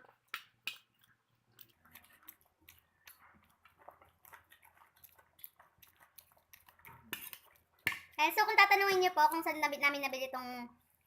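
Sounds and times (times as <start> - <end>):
person chewing food: 0.0 - 8.2
wet clicks and crunches: 0.0 - 8.2.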